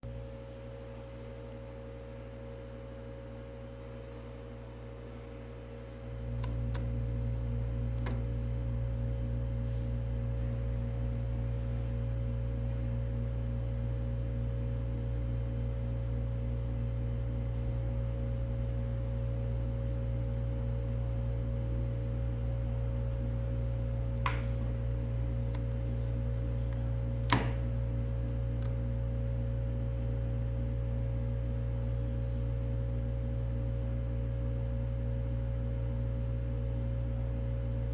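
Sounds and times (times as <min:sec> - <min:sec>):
low hum with higher tones: 0:00.0 - 0:37.9
small sharp clicks: 0:06.4 - 0:06.9, 0:07.9 - 0:08.2.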